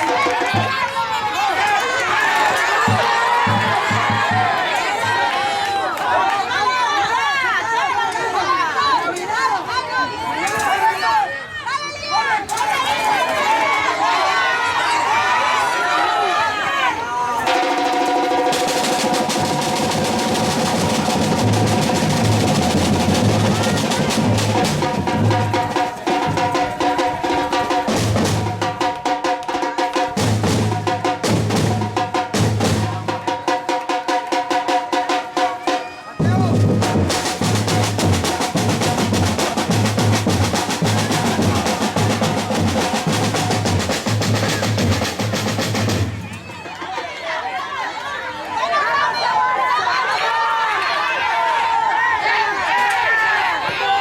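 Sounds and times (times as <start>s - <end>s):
rapid dense drumming: 0.0s - 0.8s, 2.9s - 5.2s, 17.4s - 46.3s.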